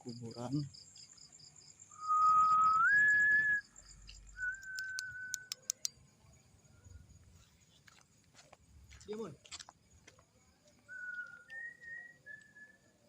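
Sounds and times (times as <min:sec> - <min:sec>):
insects chirring: 0:00.0 - 0:13.0
person whistling: 0:02.0 - 0:03.6, 0:04.4 - 0:05.6, 0:10.9 - 0:12.9
sharp clicks: 0:04.1 - 0:06.0.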